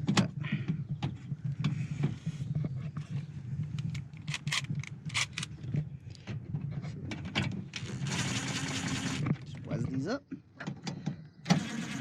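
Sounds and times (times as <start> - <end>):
metallic clicks of bolts: 3.8 - 5.5.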